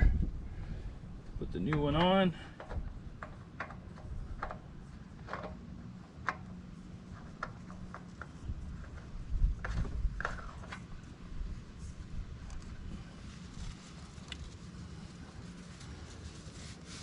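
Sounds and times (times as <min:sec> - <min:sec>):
oil filter clicking and tapping: 0:01.7 - 0:05.6, 0:06.2 - 0:09.0
rubbing: 0:13.2 - 0:17.0.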